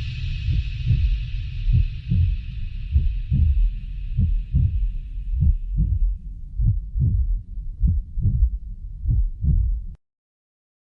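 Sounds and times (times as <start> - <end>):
high hiss: 0.0 - 6.4
heartbeat thumps: 0.0 - 10.0.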